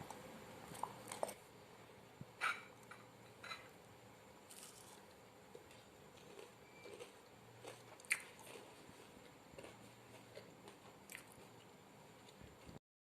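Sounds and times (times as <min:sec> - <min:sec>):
crunchy food being chewed: 0:04.5 - 0:12.8.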